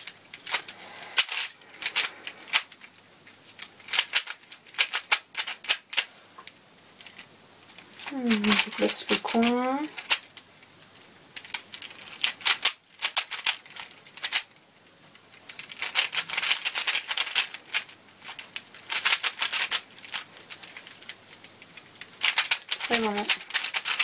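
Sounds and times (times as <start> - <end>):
speedcube clicking as turned: 0.0 - 2.9, 3.6 - 6.1, 9.9 - 10.4, 11.4 - 24.0.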